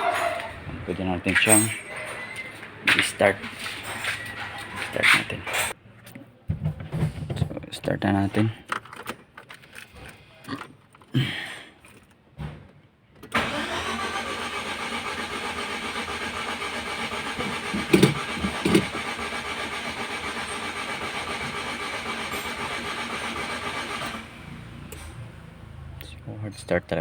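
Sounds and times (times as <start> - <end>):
engine cranking by starter: 13.3 - 26.0.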